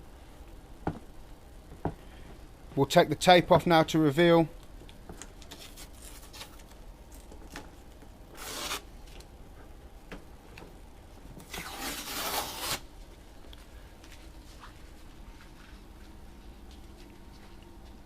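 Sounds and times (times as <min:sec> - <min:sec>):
tape peeling off plastic: 0:05.2 - 0:07.6, 0:08.3 - 0:09.3, 0:11.4 - 0:12.9.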